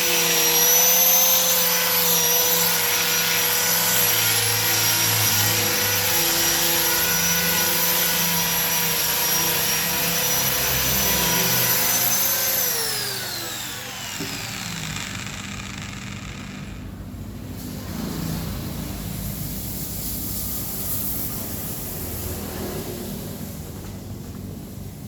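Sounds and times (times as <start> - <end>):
grinder motor whining: 0.0 - 17.1.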